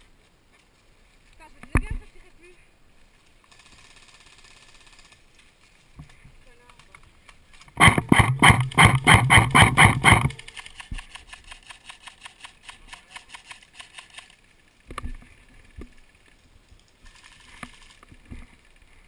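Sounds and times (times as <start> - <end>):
airsoft gun rapid firing: 7.8 - 12.5.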